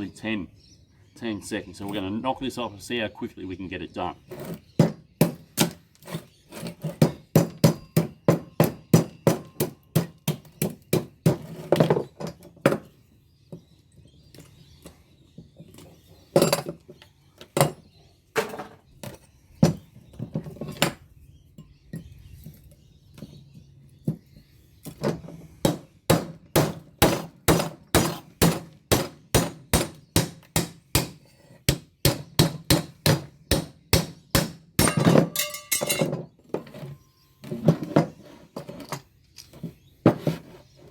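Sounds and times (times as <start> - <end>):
hammer striking steel case: 33.5 - 36.1.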